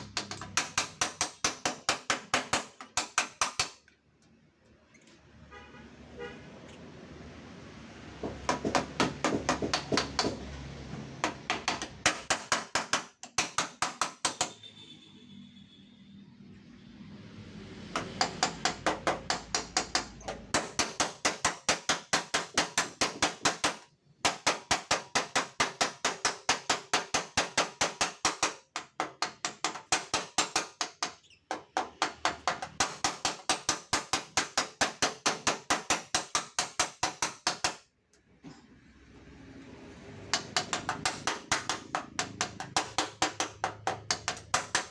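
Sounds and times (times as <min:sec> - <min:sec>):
hammer tapping on sheet steel: 0:00.0 - 0:03.8, 0:08.2 - 0:10.5, 0:11.2 - 0:14.6, 0:18.0 - 0:37.8, 0:40.3 - 0:44.9.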